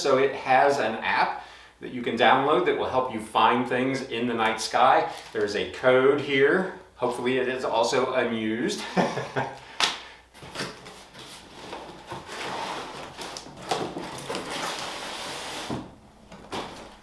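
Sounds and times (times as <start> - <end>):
boxes knocking when set down: 10.4 - 14.7, 15.6 - 17.0
cardboard scraping and rustling: 10.4 - 17.0.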